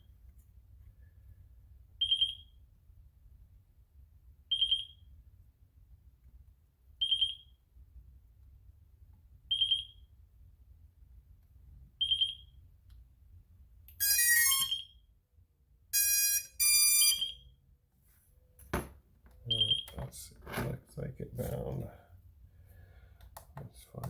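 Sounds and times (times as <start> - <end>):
long pitched beeps: 14.0 - 14.9, 16.0 - 17.4
transmitter beeping: 16.0 - 17.4.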